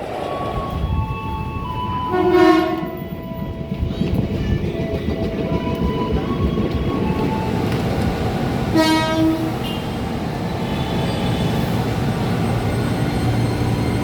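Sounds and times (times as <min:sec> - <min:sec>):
train rumbling on rails: 0:00.0 - 0:14.0
train horn blast: 0:02.1 - 0:03.1, 0:08.7 - 0:10.0.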